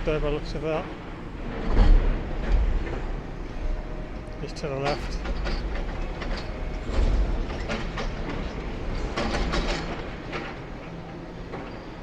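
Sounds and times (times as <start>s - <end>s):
metallic clanks and knocks: 4.2s - 12.0s.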